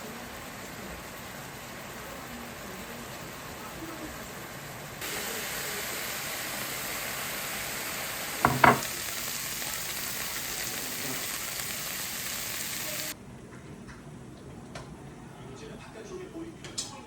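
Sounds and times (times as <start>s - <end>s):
food sizzling in a pan: 0.0s - 13.2s
quick knocks: 8.4s - 8.9s.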